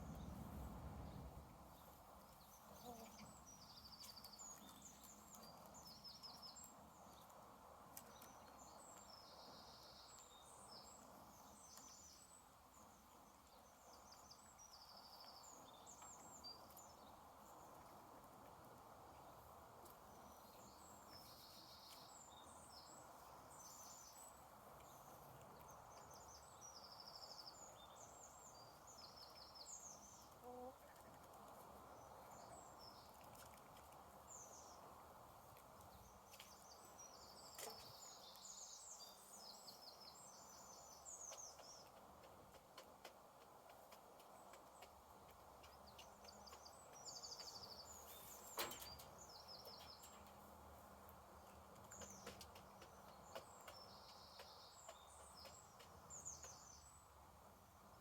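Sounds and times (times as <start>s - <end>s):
steady low background hiss: 0.0s - 58.0s
small birds chirping and trilling: 1.0s - 58.0s.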